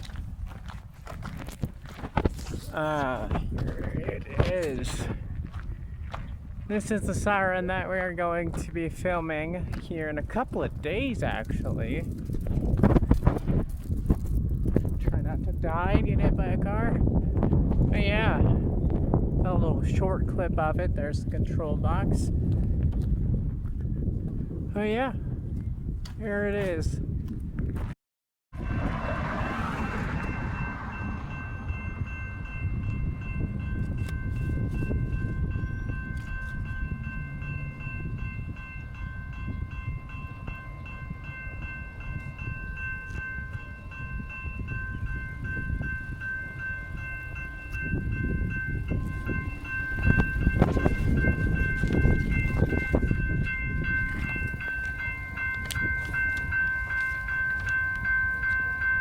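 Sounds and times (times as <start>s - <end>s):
train rumbling past: 28.6s - 59.0s.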